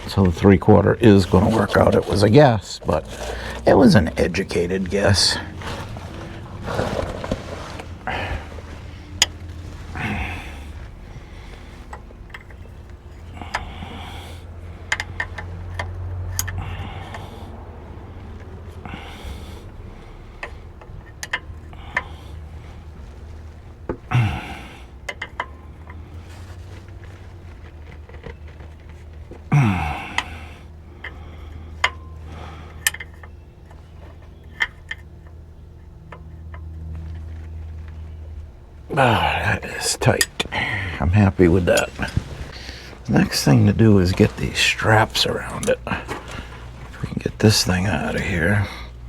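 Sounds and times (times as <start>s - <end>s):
rustling: 0.0s - 49.0s
steady low hum: 0.0s - 49.0s
wrench metallic clicks and taps: 14.8s - 17.2s, 20.4s - 22.1s, 25.0s - 26.0s, 32.7s - 35.4s
wrench clicking on metal: 14.9s - 17.2s.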